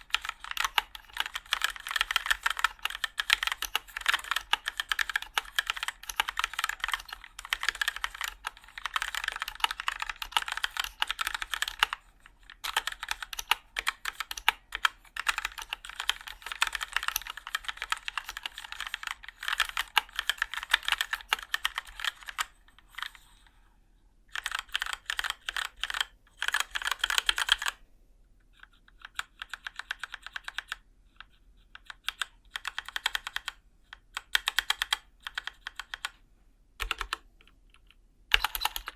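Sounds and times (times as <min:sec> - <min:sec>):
mechanical keyboard typing: 0:00.0 - 0:23.3, 0:24.3 - 0:27.8, 0:28.5 - 0:36.2, 0:36.8 - 0:38.9.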